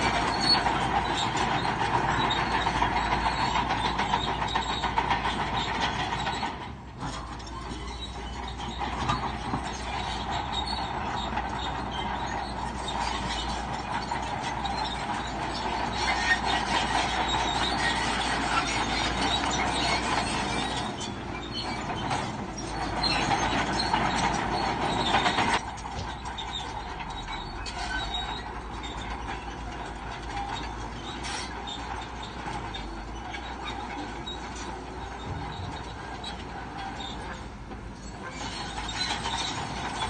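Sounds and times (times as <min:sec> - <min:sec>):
bulldozer engine running: 0:00.0 - 0:40.0
steel crawler tracks clanking: 0:00.0 - 0:40.0.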